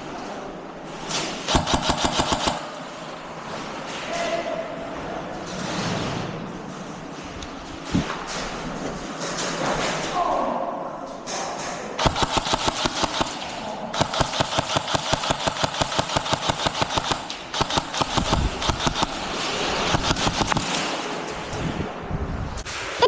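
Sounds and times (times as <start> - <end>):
electric guns firing rapid bursts: 1.5 - 3.3, 12.0 - 21.2.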